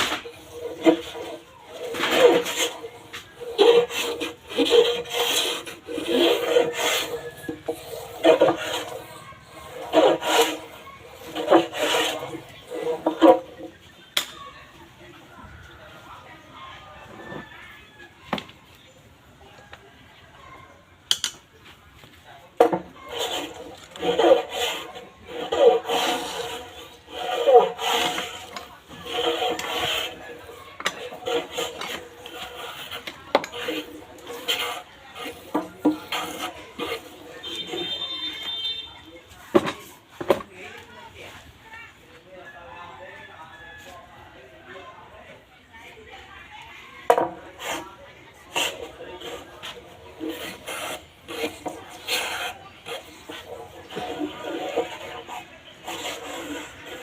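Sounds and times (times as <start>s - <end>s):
hand tool rasping on wood: 0.0s - 13.8s, 22.6s - 38.8s, 47.2s - 57.0s.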